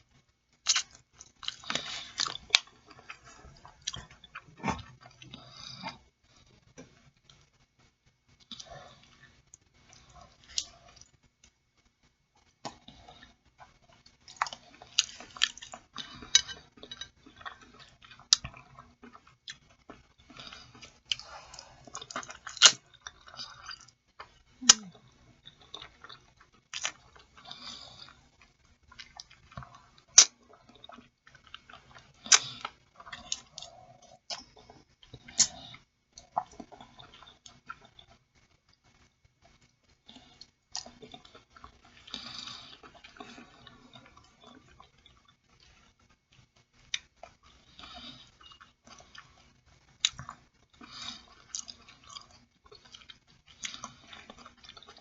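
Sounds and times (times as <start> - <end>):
person chewing food: 0.2 - 7.7, 8.3 - 55.0.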